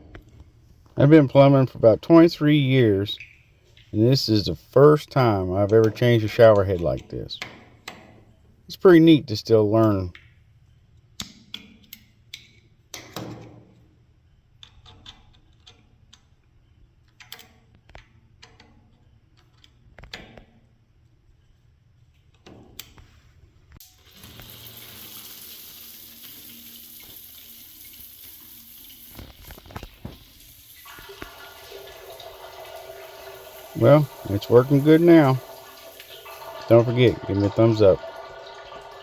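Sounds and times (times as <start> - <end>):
water spraying from shower head: 24.0 - 38.0.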